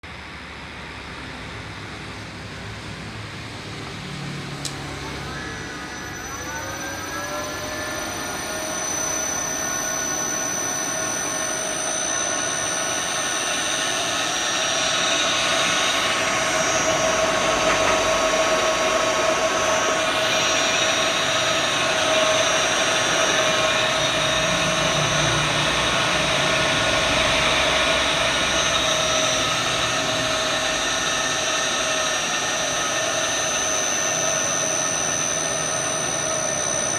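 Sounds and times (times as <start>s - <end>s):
electric motor whine: 3.4s - 36.9s
thin high steady tone: 4.8s - 36.9s.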